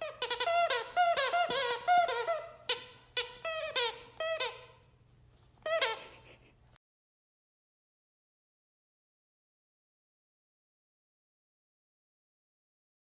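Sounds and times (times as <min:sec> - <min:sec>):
squeaky dog toy squeaks: 0:00.0 - 0:04.8, 0:05.6 - 0:06.2.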